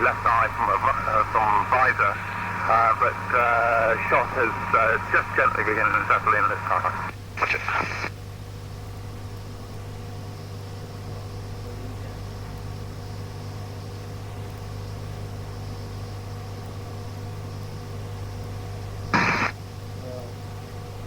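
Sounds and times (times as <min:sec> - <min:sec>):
radio transmission burst: 0:00.0 - 0:08.1, 0:19.1 - 0:19.6
radio receiver hum and hiss: 0:00.0 - 0:16.0, 0:16.6 - 0:21.0.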